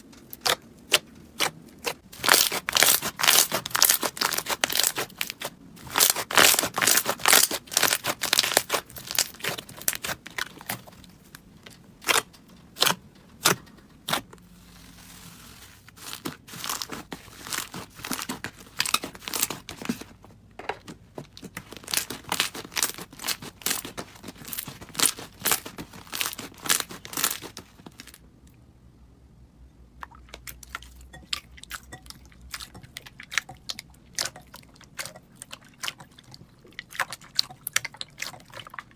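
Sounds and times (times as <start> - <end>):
slime crackling and popping: 0.3 - 14.3, 15.9 - 19.9, 21.4 - 28.2.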